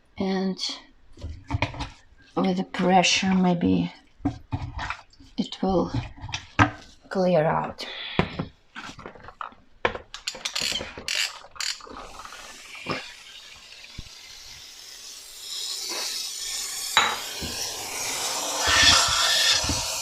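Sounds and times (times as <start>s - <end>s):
plastic parts clicking and knocking: 8.2s - 13.1s
steam cleaner hissing: 11.8s - 20.0s.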